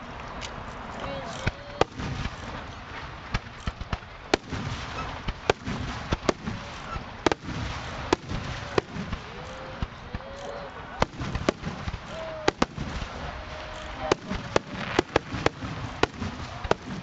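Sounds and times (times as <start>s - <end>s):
firework crackle: 0.0s - 17.0s
firework shells bursting: 1.3s - 17.0s.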